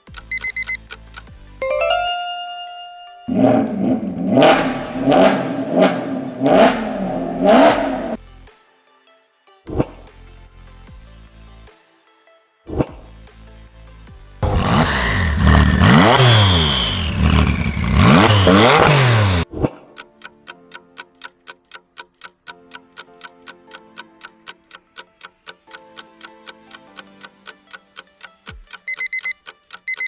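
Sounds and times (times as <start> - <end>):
countdown clock ticking: 0.0 - 8.2, 14.4 - 30.0
short beeps: 1.6 - 5.0, 28.9 - 30.0
faint musical notes: 1.6 - 8.2
car engine revving: 3.3 - 8.2, 14.4 - 19.4.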